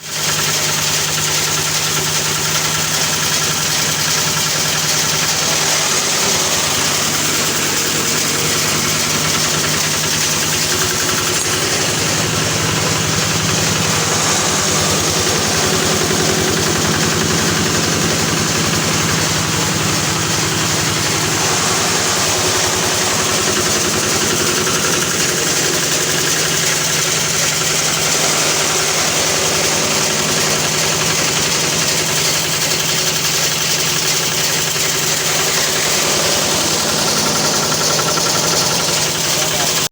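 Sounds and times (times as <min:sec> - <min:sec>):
grass chopper machine running: 0:00.0 - 0:39.9.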